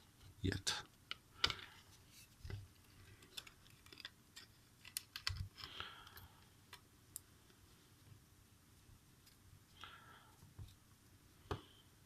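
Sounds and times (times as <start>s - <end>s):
smartphone parts clicking: 3.2s - 5.7s.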